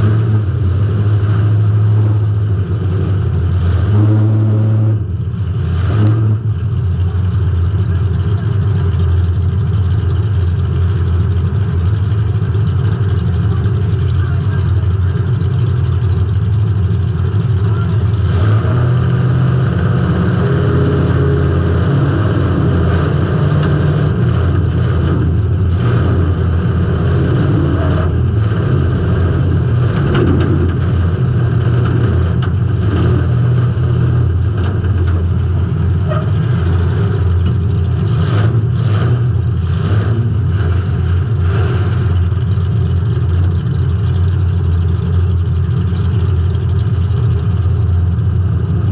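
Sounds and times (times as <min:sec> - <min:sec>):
car engine running hard: 0:00.0 - 0:48.9.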